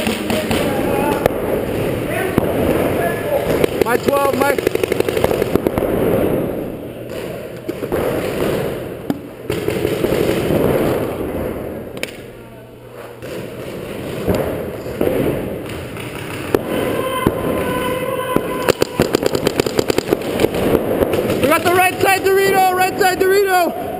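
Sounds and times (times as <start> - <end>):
paintball markers firing: 0.0 - 1.4, 3.5 - 5.9, 13.2 - 17.8, 18.4 - 22.1.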